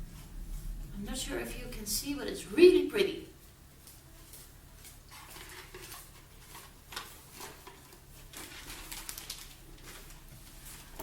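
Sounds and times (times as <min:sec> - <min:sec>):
faint low hum: 0:00.0 - 0:11.0
rustling of packing material: 0:03.5 - 0:11.0.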